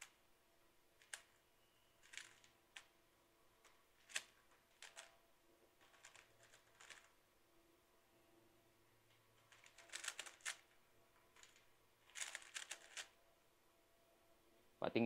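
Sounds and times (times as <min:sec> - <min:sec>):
plastic puzzle cube clicking: 0:01.0 - 0:01.4, 0:02.0 - 0:02.9, 0:03.6 - 0:05.1, 0:05.9 - 0:07.2, 0:09.5 - 0:10.7, 0:11.3 - 0:13.2.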